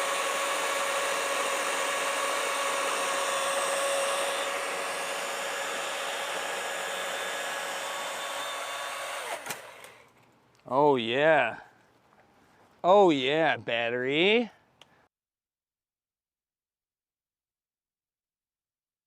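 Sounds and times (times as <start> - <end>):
battery chainsaw whining: 0.0 - 10.1.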